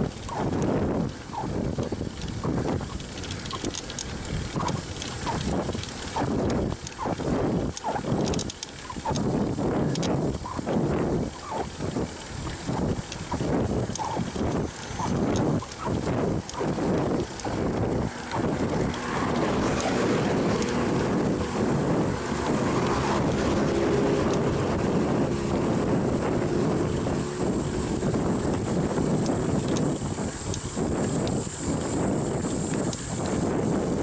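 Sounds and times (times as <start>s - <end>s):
wind buffeting microphone: 0.0s - 34.0s
faint light ticks: 1.8s - 7.0s, 7.7s - 9.3s, 29.2s - 33.4s.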